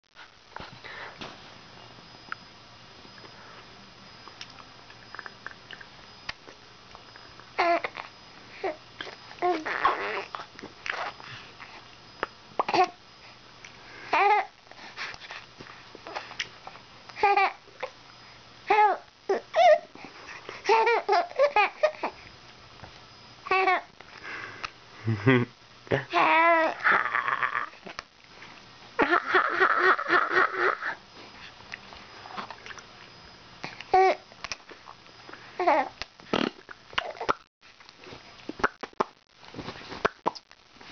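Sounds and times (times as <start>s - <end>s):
baby babbling: 9.4s - 10.3s
baby making spluttery mouth sounds: 9.4s - 11.1s, 35.7s - 37.4s
mouth clicks: 38.5s - 39.2s, 40.0s - 40.6s.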